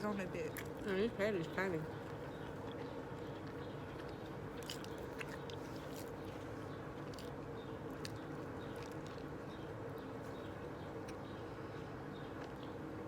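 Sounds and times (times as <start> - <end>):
background hum: 0.0 - 13.0
chewing with wet mouth clicks: 0.5 - 1.0, 1.9 - 9.7.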